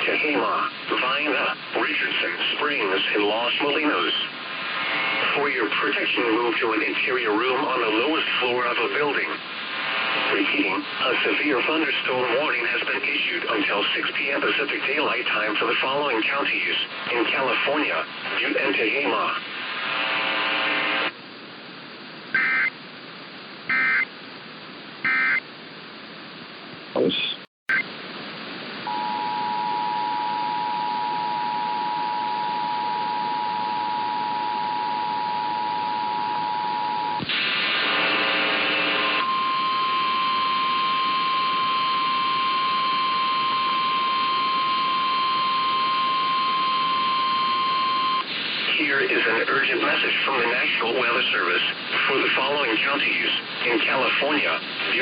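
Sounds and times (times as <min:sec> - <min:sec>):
digital data bursts: 0:22.4 - 0:22.7, 0:23.7 - 0:24.1, 0:25.0 - 0:25.4
two-tone attention signal: 0:22.4 - 0:22.7, 0:23.7 - 0:24.0, 0:25.1 - 0:25.4.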